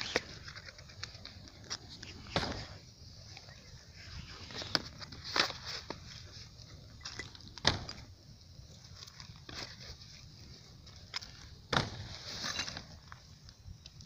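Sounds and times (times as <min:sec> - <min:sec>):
bonfire burning with low rumble: 0:00.0 - 0:14.0
fire popping and cracking: 0:00.0 - 0:14.0.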